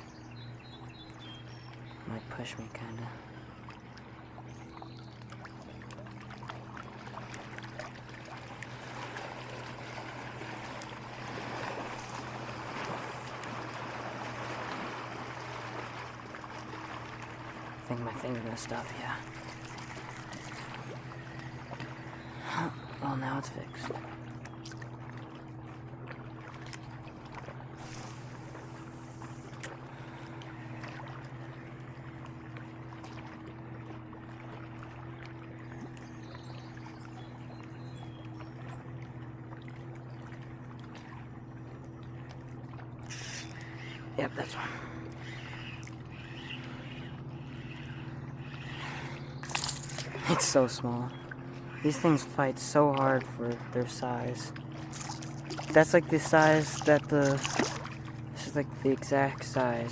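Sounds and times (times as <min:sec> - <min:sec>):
low motor hum: 0:00.0 - 0:59.9
water splashing against boat: 0:00.0 - 0:59.9
small clicks: 0:43.1 - 0:43.9, 0:45.1 - 0:46.6, 0:54.9 - 0:57.9.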